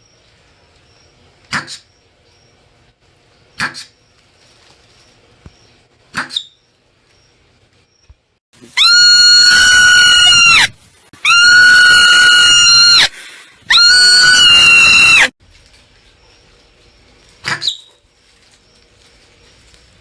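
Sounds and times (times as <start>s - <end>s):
marmot alarm screams: 8.7s - 15.3s.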